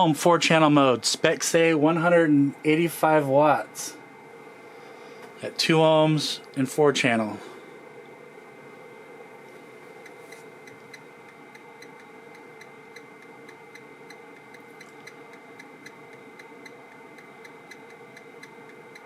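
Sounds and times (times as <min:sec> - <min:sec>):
faint hum with thin tone: 0:00.0 - 0:19.0
sharp ticks: 0:10.0 - 0:19.0.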